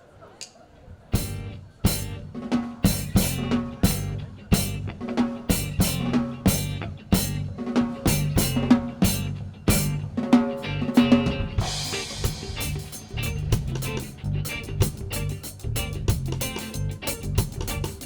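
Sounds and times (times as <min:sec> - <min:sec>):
drum kit with rimshots: 0:00.4 - 0:18.0
reggae band playing: 0:01.1 - 0:18.0
low bass line: 0:11.6 - 0:18.0.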